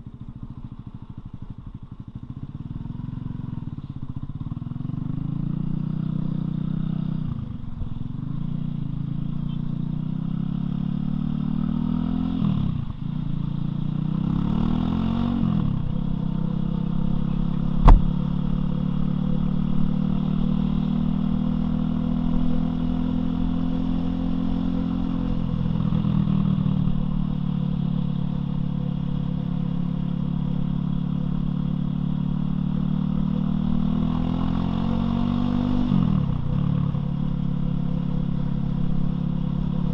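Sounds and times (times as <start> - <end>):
motorcycle engine revving: 0.0 - 39.9
sharp knock: 17.8 - 18.2.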